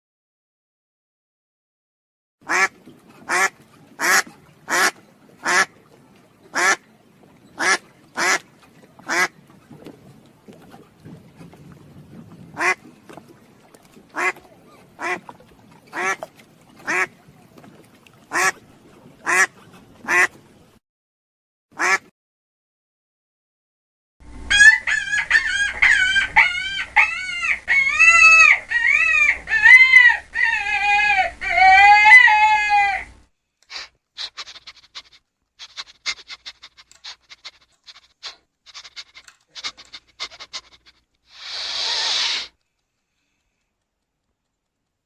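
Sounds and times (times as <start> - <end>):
chicken squawking: 33.7 - 42.5
brief hiss-like burst: 33.7 - 42.6.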